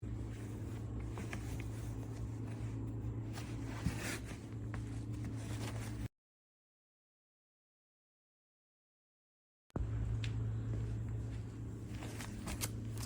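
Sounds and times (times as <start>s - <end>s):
handling rustles and clicks: 0.0s - 6.1s, 11.8s - 13.0s
low steady hum: 0.0s - 6.1s, 9.8s - 13.0s.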